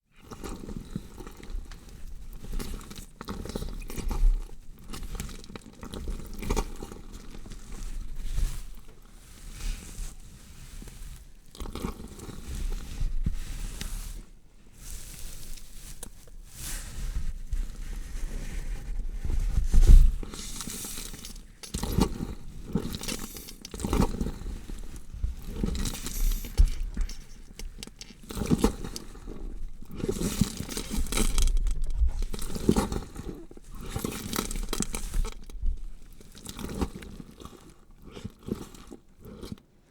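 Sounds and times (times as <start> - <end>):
flesh tearing and crunching: 20.4 - 39.5.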